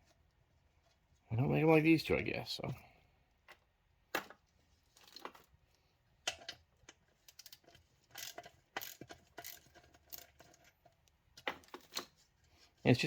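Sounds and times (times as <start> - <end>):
tools clicking and knocking: 6.2 - 12.2.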